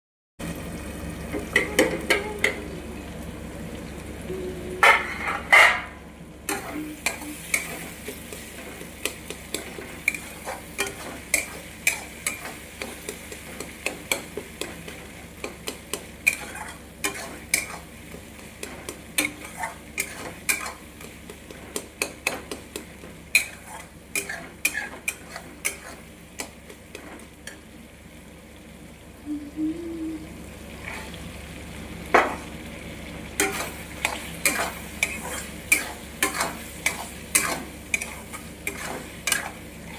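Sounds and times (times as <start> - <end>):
frying sizzle: 0.4 - 39.9
spoon scraping a pan: 4.8 - 27.6, 33.4 - 39.9.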